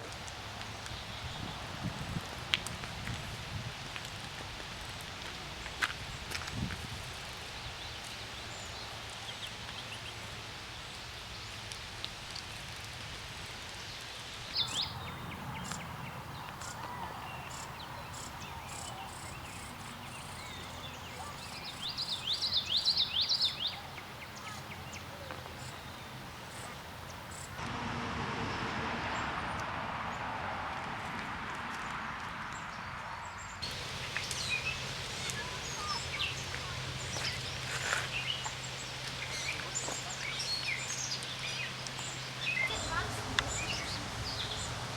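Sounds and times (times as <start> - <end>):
outdoor background noise: 0.0 - 44.9
bird calls: 14.4 - 27.6, 33.6 - 44.9.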